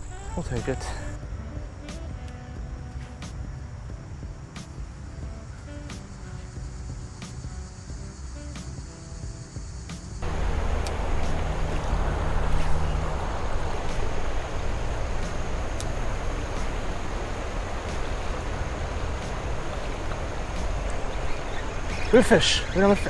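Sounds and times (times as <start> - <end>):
faint ticks: 10.2 - 23.0
outdoor rushing noise with low rumble: 10.2 - 23.0.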